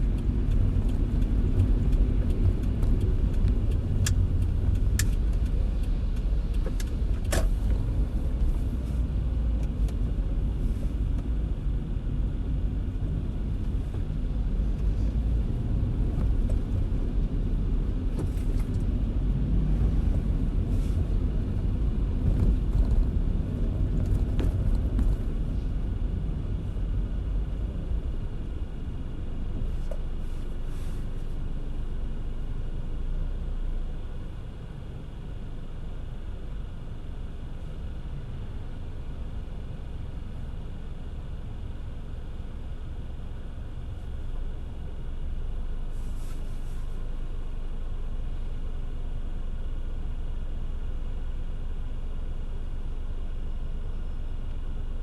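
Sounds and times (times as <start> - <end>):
sharp ticks: 0.0 - 7.4
road and engine rumble: 0.0 - 55.0.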